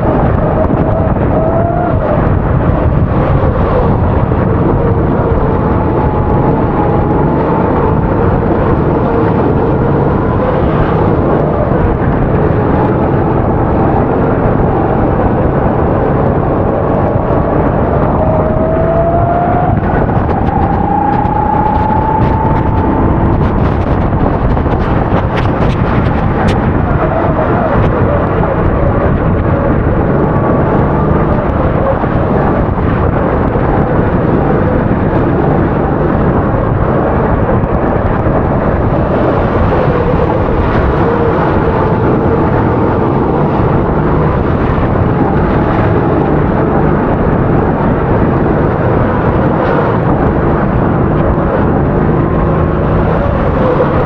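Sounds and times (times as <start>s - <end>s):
steady rushing noise: 0.0s - 54.0s
kart engine running under load: 50.3s - 54.0s.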